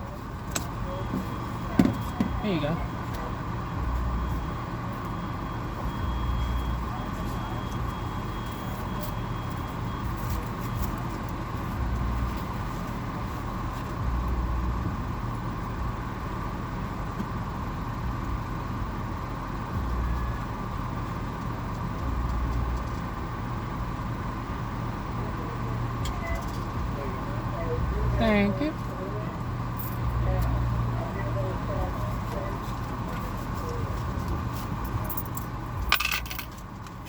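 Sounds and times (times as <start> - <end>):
car engine idling: 0.0 - 37.0.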